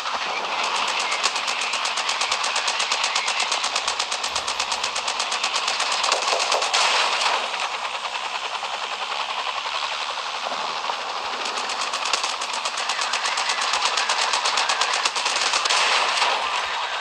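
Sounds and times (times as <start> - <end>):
helicopter rotor blades chopping: 1.2 - 17.0.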